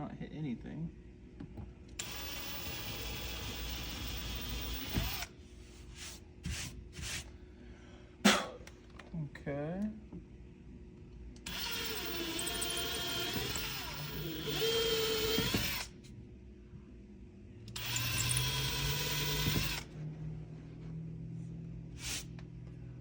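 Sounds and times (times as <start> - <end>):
cordless drill whine: 2.0 - 5.3, 11.4 - 15.9, 17.8 - 19.9.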